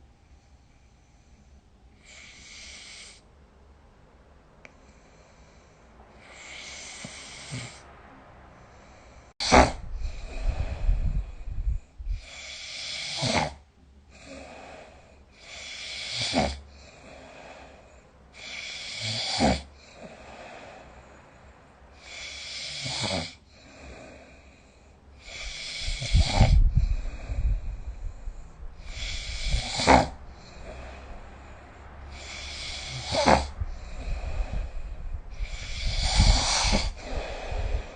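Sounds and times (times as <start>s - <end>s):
person snoring: 2.0s - 3.2s, 6.2s - 7.8s, 9.4s - 11.5s, 12.2s - 17.8s, 18.4s - 21.0s, 22.0s - 28.2s, 28.8s - 37.9s.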